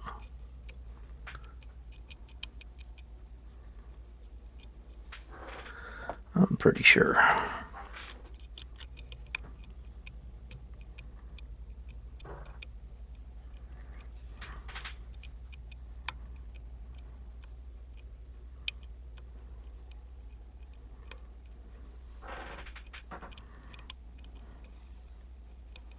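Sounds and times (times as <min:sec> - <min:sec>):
steady low hum: 0:00.0 - 0:25.9.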